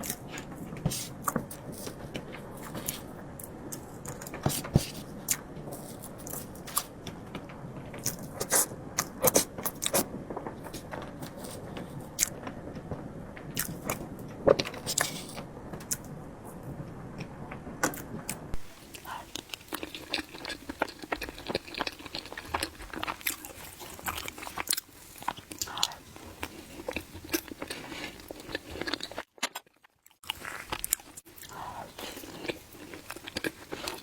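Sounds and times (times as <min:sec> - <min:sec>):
wet chewing mouth clicks: 0:18.6 - 0:29.6.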